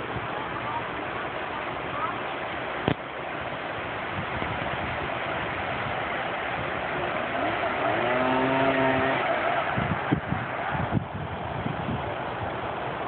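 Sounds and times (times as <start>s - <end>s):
floodwater rushing: 0.0s - 13.0s
vehicle engine: 4.9s - 13.0s.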